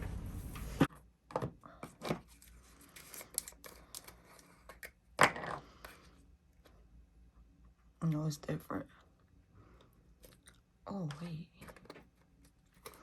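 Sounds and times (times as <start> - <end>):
small objects clicking and rustling: 1.4 - 6.0, 10.2 - 13.0.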